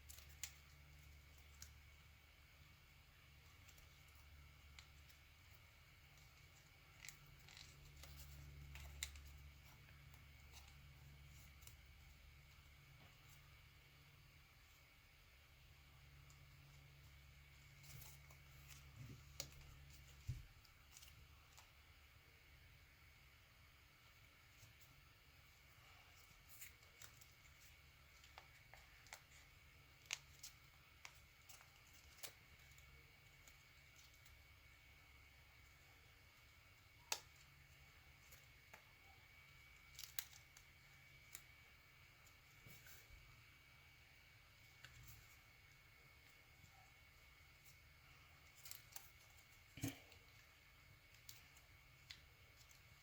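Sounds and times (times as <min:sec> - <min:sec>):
low steady hum: 0:00.0 - 0:53.0
paper crinkling and creasing: 0:03.4 - 0:13.4.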